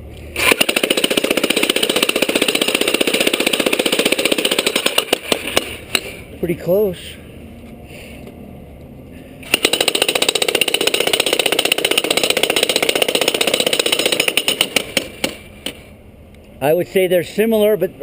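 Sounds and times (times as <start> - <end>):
electric jackhammer hammering: 0.4 - 6.1, 9.4 - 15.8.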